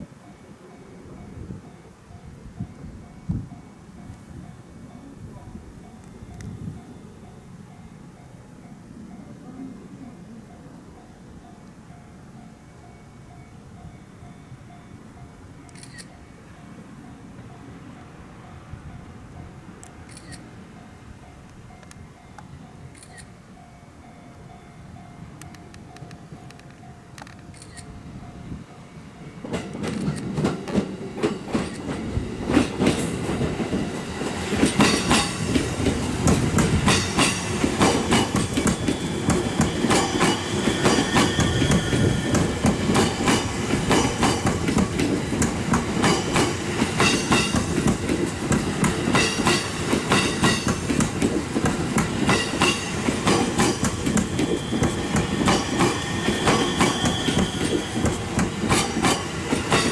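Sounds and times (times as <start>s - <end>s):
wheels clattering over rail joints: 29.4s - 59.9s
high wheel squeal: 38.7s - 42.7s, 54.0s - 59.0s.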